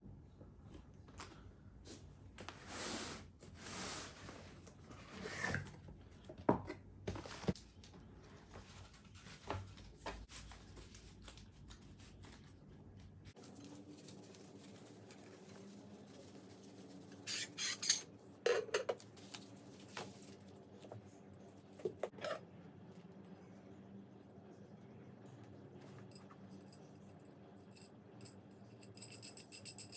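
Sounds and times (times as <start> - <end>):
metal parts and tools clinking: 17.2 - 18.9.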